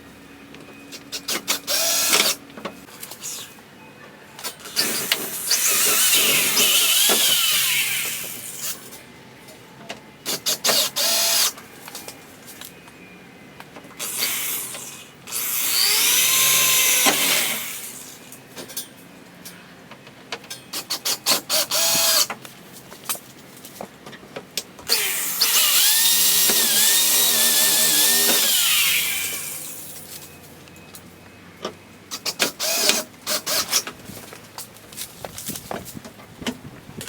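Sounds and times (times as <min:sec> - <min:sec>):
power drill running: 0:01.2 - 0:02.4, 0:04.7 - 0:08.4, 0:10.3 - 0:11.6, 0:14.0 - 0:18.0, 0:21.5 - 0:22.3, 0:24.9 - 0:29.9.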